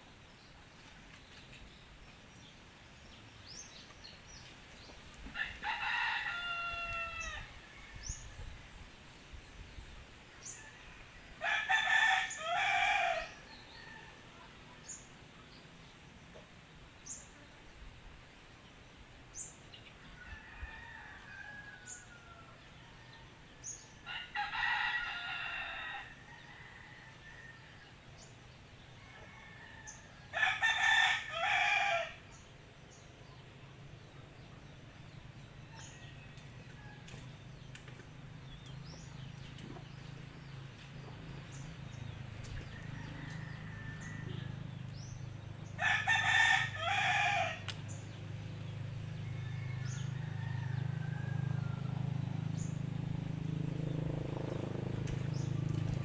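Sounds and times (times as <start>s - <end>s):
rooster crowing: 5.4s - 8.2s, 10.6s - 14.2s, 20.2s - 23.3s, 24.0s - 27.8s, 29.0s - 32.2s, 42.7s - 44.9s, 45.7s - 47.7s, 49.1s - 52.5s.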